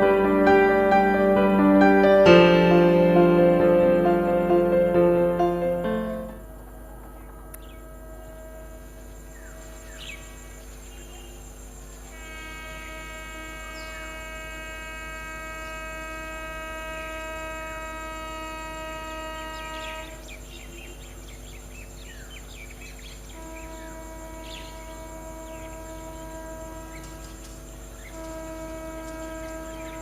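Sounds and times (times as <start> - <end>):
birds chirping: 0.0 - 12.1, 19.4 - 30.0
electrical hum: 0.0 - 30.0.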